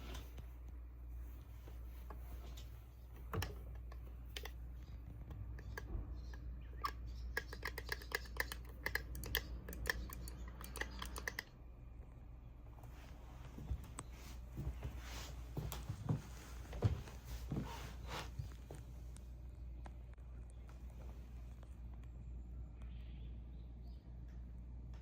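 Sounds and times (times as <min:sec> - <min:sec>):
low steady hum: 0:00.0 - 0:25.0
light clicks and taps: 0:01.6 - 0:12.2.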